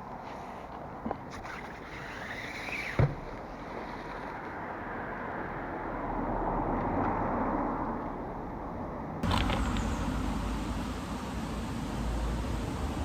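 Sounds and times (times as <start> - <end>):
road traffic passing: 4.8 - 13.0.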